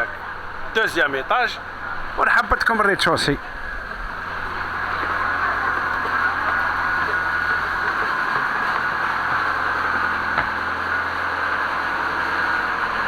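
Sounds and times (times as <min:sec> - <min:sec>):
boat engine idling: 0:03.1 - 0:13.0.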